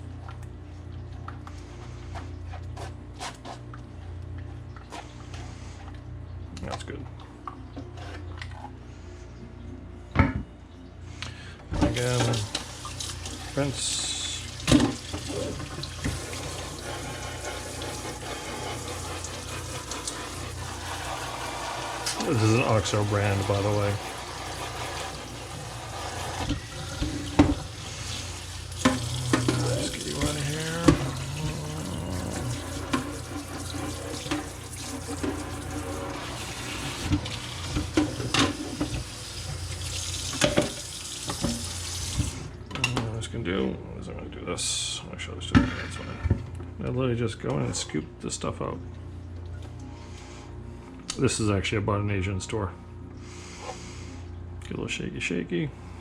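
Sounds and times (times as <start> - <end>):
tap running into a sink: 26.3 - 27.7
things clattering in sink: 28.8 - 36.2.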